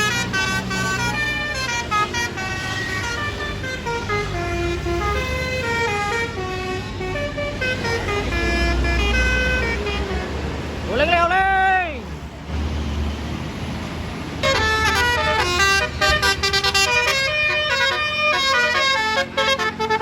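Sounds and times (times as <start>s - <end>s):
bus air horn melody: 0.0s - 10.6s, 14.4s - 20.0s
bus engine rumble: 0.0s - 20.0s.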